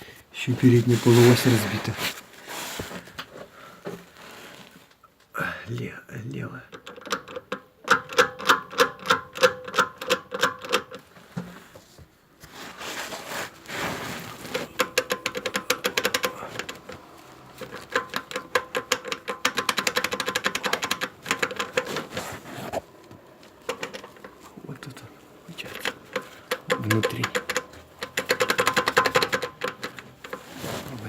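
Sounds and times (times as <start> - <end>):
rapid clicking of car axle joint: 6.8 - 11.9, 13.5 - 31.0.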